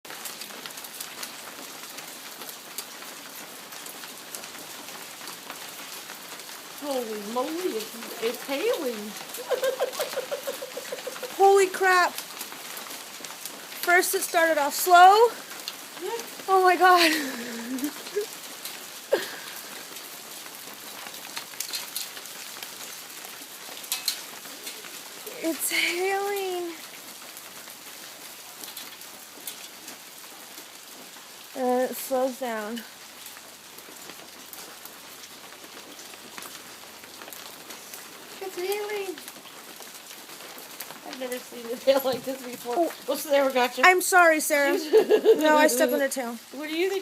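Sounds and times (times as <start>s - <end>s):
hail hitting hard surfaces: 0.0s - 47.0s.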